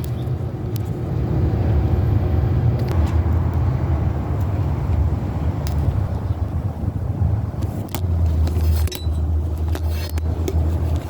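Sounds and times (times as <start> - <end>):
vehicle engine rumbling: 0.0 - 11.0.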